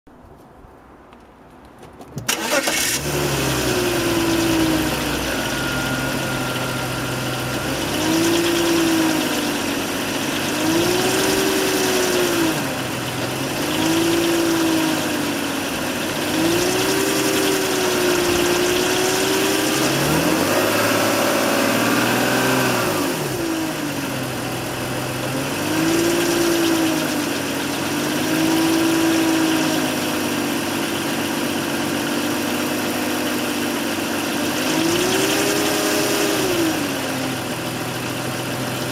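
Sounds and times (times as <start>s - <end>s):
car engine idling and revving: 2.1s - 38.9s.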